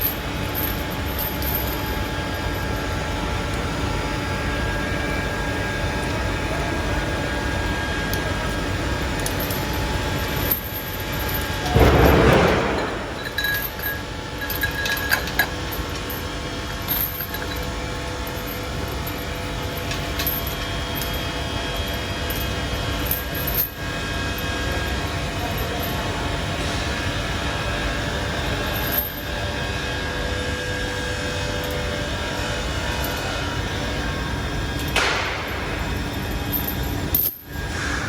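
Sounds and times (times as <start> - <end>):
machinery humming: 0.0 - 38.0.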